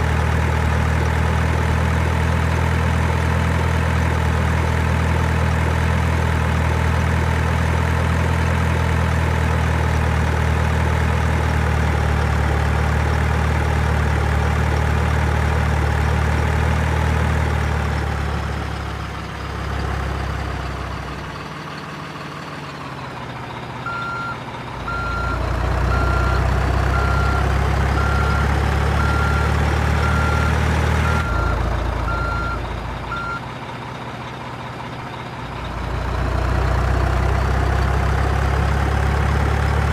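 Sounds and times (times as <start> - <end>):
simulated diesel engine drone: 0.0 - 39.9
reversing beeper: 23.9 - 33.4.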